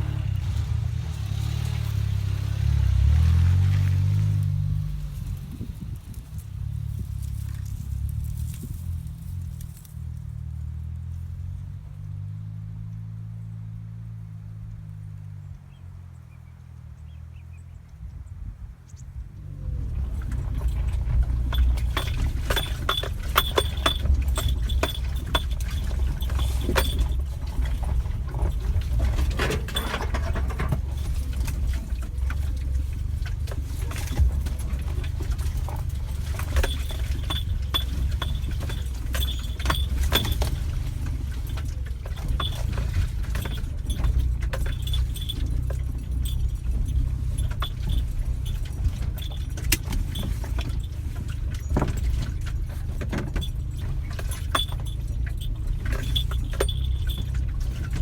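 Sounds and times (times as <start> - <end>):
road and engine rumble: 0.0 - 58.0
loose rattles and clinks: 19.9 - 58.0.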